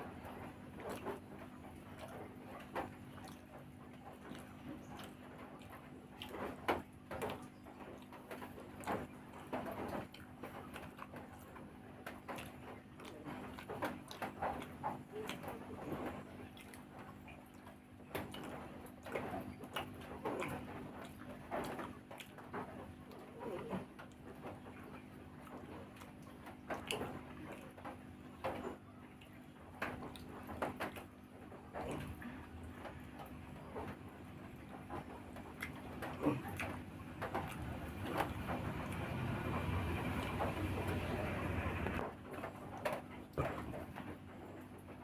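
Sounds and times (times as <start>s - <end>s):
person chewing with wet smacking: 0.0s - 45.0s
steady low hum: 13.1s - 45.0s.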